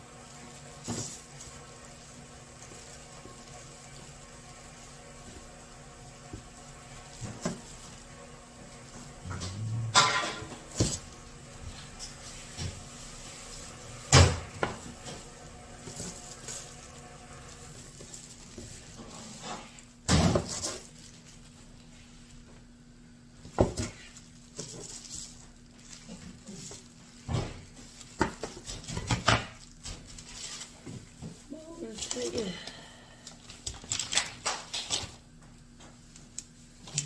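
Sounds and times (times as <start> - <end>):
objects being handled and set down: 6.2 - 8.0, 23.3 - 32.4.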